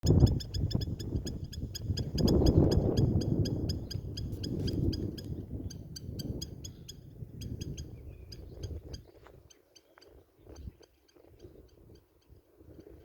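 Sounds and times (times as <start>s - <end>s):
bird chirping rapidly: 0.1s - 9.9s.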